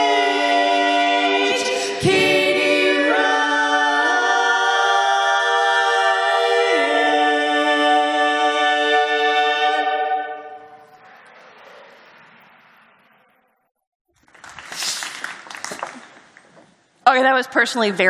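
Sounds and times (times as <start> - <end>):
women singing sustained chord: 0.0 - 10.8.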